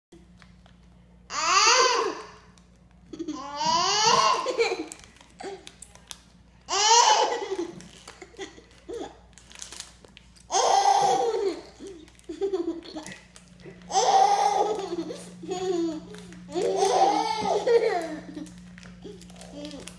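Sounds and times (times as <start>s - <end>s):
child squealing and laughing: 13.9s - 18.3s
child babbling: 15.8s - 18.4s.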